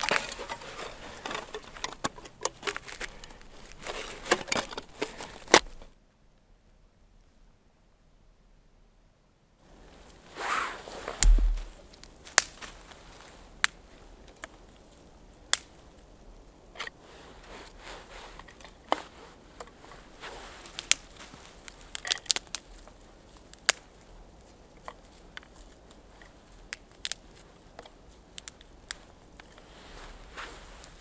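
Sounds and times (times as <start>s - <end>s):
heavy thump: 11.2s - 11.8s.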